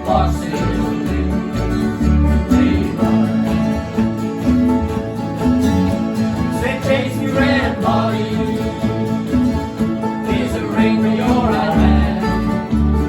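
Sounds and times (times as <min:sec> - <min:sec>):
person singing: 0:00.0 - 0:04.1, 0:06.5 - 0:09.4, 0:10.2 - 0:13.0
plucked guitar and banjo: 0:00.0 - 0:13.0.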